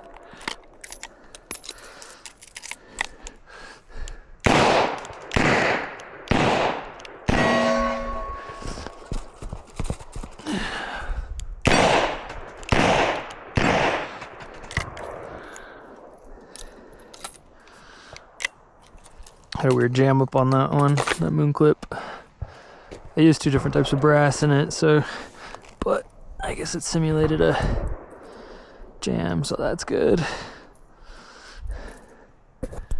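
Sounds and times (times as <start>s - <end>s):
gun handling clicks: 0.0s - 7.6s, 11.3s - 19.8s.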